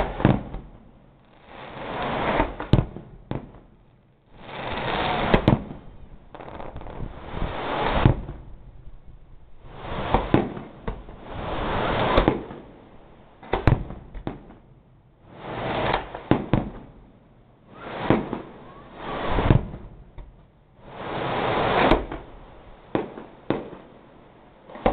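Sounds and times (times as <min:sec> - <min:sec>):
firework crackling hiss: 0:00.0 - 0:03.7, 0:04.3 - 0:08.9, 0:09.5 - 0:14.6, 0:15.2 - 0:17.0, 0:17.6 - 0:24.9
firework shells bursting: 0:00.0 - 0:03.7, 0:09.6 - 0:14.7, 0:15.3 - 0:16.9, 0:17.7 - 0:24.9.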